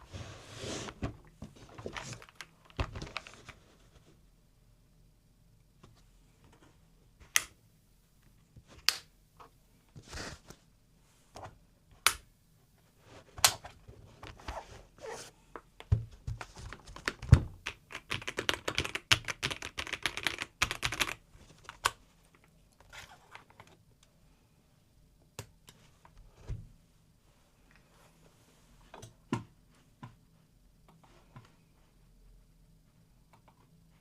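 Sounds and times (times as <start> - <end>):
typing on mechanical keyboard: 16.8 - 21.8.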